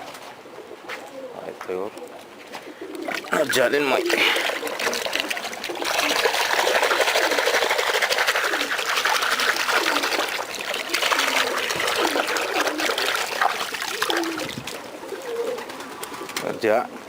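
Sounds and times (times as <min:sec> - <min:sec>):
pigeons splashing in water: 0:02.8 - 0:16.7.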